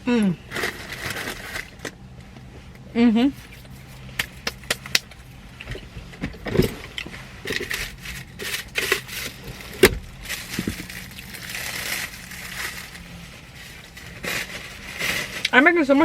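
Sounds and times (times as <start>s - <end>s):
chewing crusty bread: 3.4s - 15.6s.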